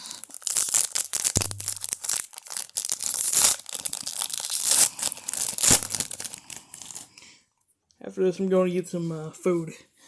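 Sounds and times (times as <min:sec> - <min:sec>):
plastic wrapper crinkling and tearing: 0:00.0 - 0:07.1.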